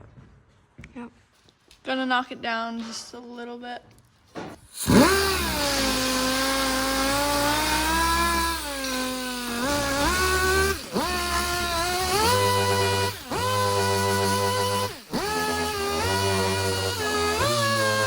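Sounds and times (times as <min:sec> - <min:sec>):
sander motor whining: 0:04.7 - 0:18.0.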